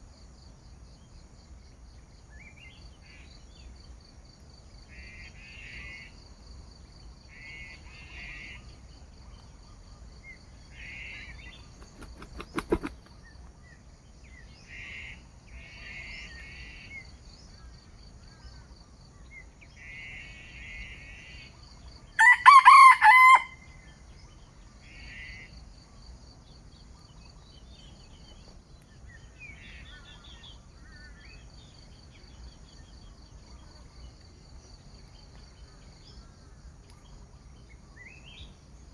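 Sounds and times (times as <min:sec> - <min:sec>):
insects trilling: 0:10.4 - 0:13.2
rooster crowing: 0:22.2 - 0:23.6.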